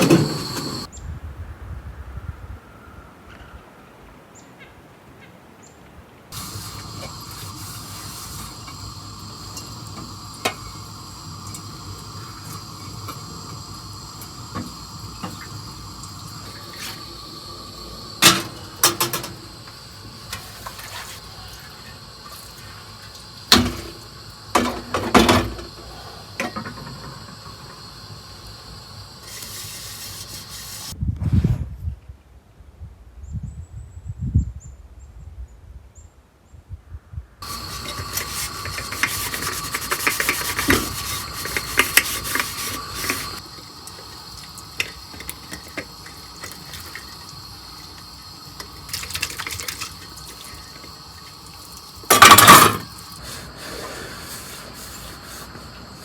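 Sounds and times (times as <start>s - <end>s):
steady watery hiss: 0.0s - 0.9s, 6.3s - 31.0s, 37.4s - 56.0s.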